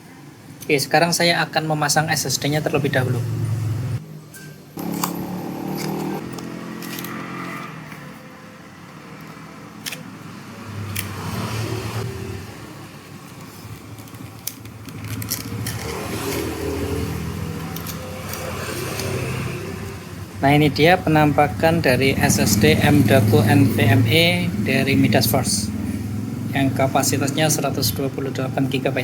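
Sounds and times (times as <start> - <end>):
vehicle engine running: 4.8 - 7.2, 19.6 - 27.3
packaging crackling and clicks: 13.2 - 19.3.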